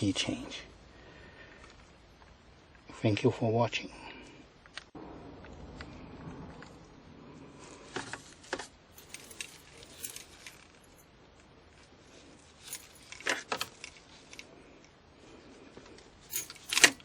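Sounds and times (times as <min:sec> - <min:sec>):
keys jangling: 0:09.0 - 0:11.0, 0:12.6 - 0:14.4, 0:16.3 - 0:17.0.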